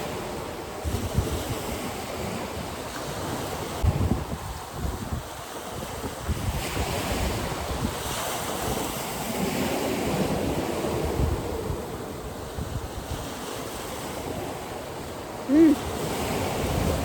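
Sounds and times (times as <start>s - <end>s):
strong wind: 0.0s - 17.0s
surf breaking on a beach: 0.0s - 17.0s
wind buffeting the microphone: 0.0s - 17.0s.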